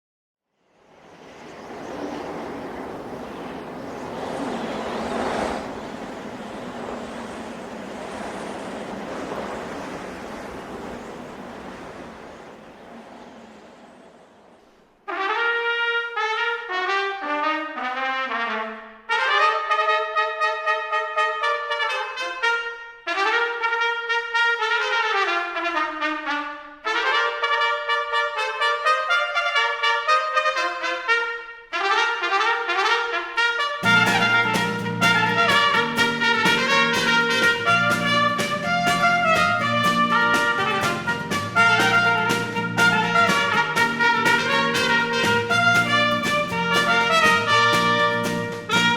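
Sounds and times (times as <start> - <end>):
trumpet melody: 15.0 - 48.9
low brass bass instruments: 15.1 - 48.9.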